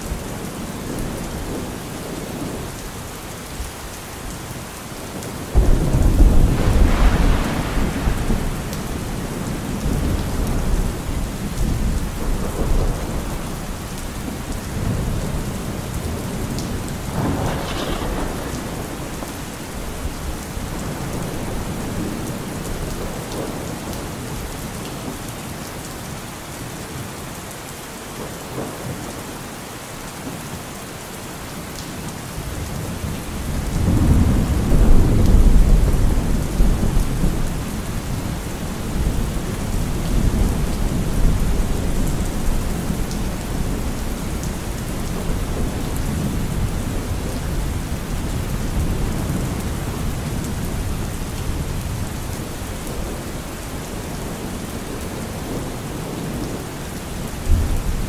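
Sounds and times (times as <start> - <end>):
steady rain: 0.0 - 58.0
thunder rumbling: 5.4 - 24.0, 32.9 - 54.5.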